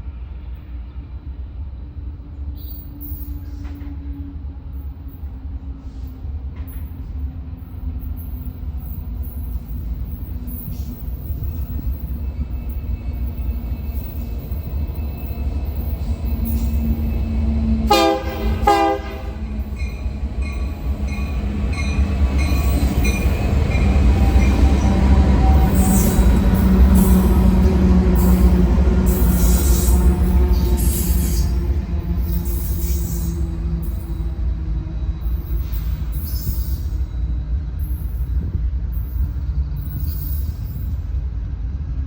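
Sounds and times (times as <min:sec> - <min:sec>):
train rumble: 0:00.0 - 0:42.0
locomotive chime horn blasts: 0:17.9 - 0:20.0.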